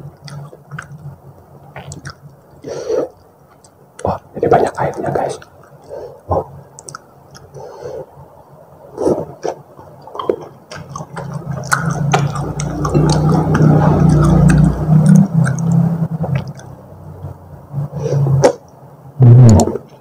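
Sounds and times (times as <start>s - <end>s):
squishy chewing: 9.0s - 17.4s.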